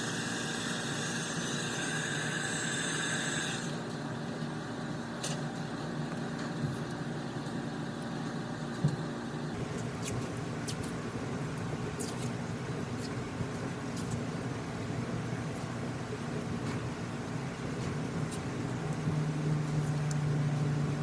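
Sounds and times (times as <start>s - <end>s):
high-pitched whine: 0.0s - 6.7s
electric fan whirring: 0.0s - 21.0s.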